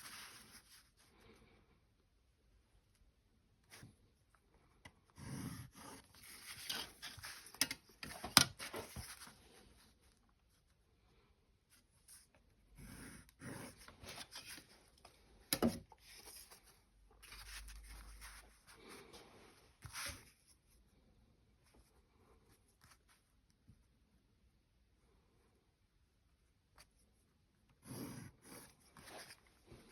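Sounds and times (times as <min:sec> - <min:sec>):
pencil scratching on paper: 0:05.0 - 0:07.7, 0:12.8 - 0:14.7, 0:27.7 - 0:29.9.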